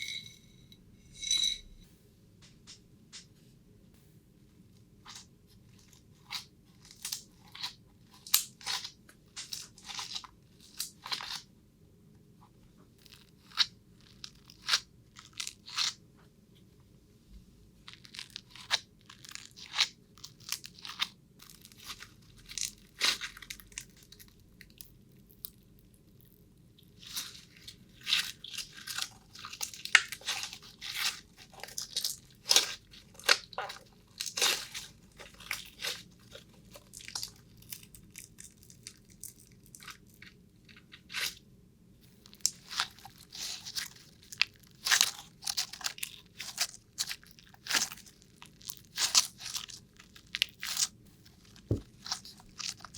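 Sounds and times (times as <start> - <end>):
crunching and crackling: 17.9 - 41.4, 42.1 - 52.9.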